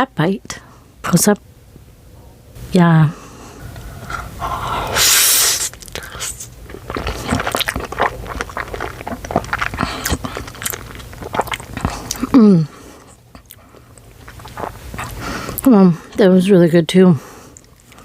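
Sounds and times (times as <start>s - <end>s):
person chewing noodles: 3.6s - 16.2s, 17.4s - 18.0s.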